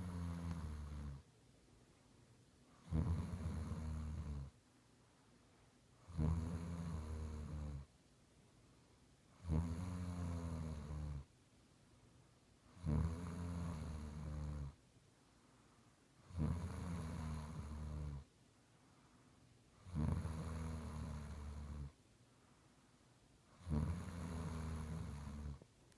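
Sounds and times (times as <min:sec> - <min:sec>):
person snoring: 0:00.0 - 0:01.2, 0:02.8 - 0:04.5, 0:06.0 - 0:07.9, 0:09.4 - 0:11.3, 0:12.8 - 0:14.8, 0:16.3 - 0:18.3, 0:19.8 - 0:22.0, 0:23.6 - 0:25.6.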